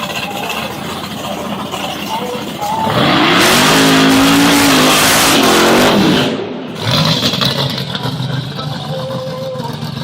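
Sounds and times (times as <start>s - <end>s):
engine revving hard: 2.8s - 8.4s.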